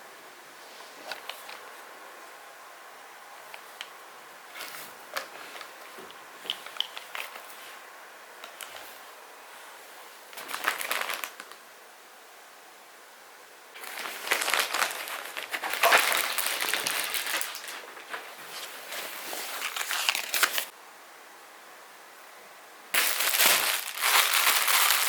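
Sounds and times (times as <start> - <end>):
handled material crinkling: 4.5 - 7.8, 10.3 - 11.6, 13.8 - 20.7, 23.0 - 25.0.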